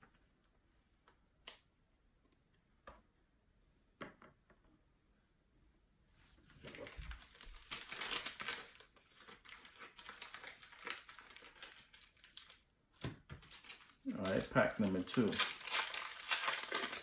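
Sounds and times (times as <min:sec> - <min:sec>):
plastic wrapper crinkling: 0:06.4 - 0:17.0.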